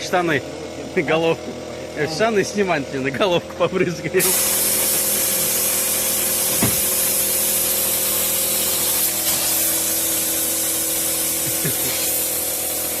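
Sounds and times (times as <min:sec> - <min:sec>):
compressed air hissing: 0:04.2 - 0:13.0.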